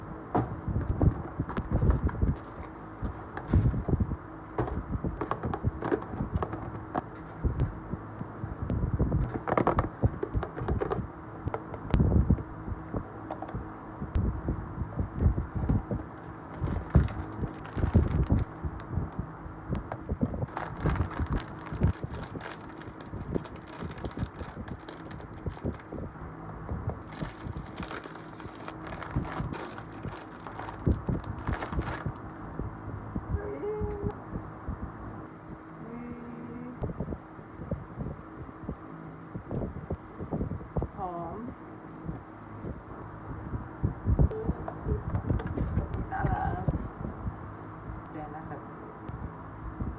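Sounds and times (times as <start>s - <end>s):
steady low hum: 0.0s - 49.9s
box and toy being handled: 0.3s - 3.9s, 4.5s - 7.4s, 9.2s - 11.9s, 16.2s - 18.9s, 20.5s - 25.9s, 27.0s - 32.3s.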